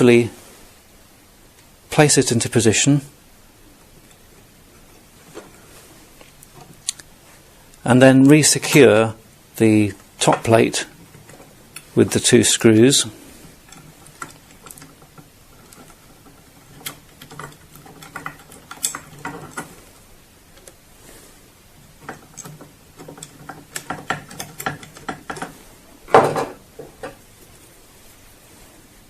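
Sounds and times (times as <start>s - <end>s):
handling metal parts: 13.3s - 19.8s, 21.8s - 27.2s.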